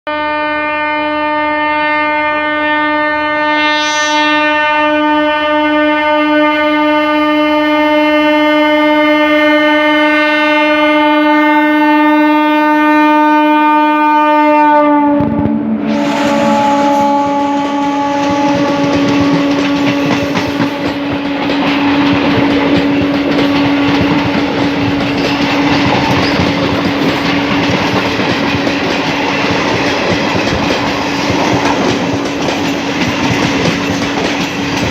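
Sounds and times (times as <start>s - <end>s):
locomotive horn blast: 0.1s - 27.7s
passing train rumble and wheel clatter: 1.0s - 34.9s.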